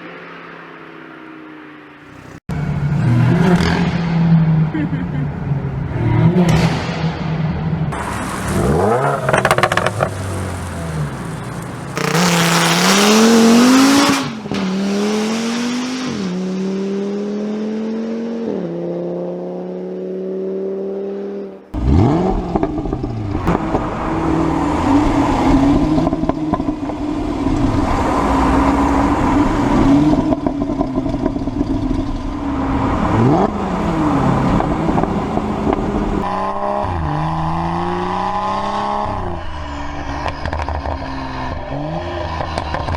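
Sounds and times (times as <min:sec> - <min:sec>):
car exhaust accelerating hard: 0:07.9 - 0:16.7
car engine running steadily: 0:08.0 - 0:14.6.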